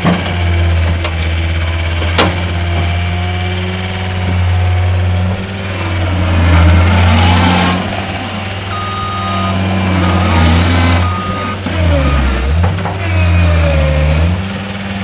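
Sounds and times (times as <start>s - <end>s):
diesel engine running: 0.0s - 15.0s
hydraulic and track noise: 0.0s - 15.0s
backup alarm beeps: 8.7s - 12.5s.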